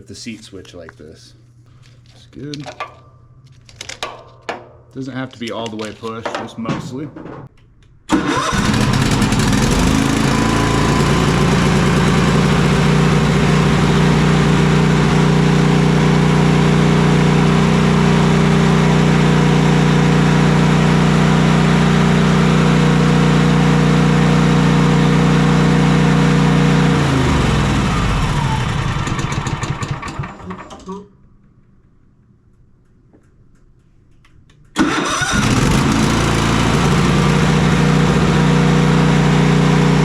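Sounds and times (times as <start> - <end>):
mower engine starting and running: 8.1 - 31.0, 34.8 - 40.0.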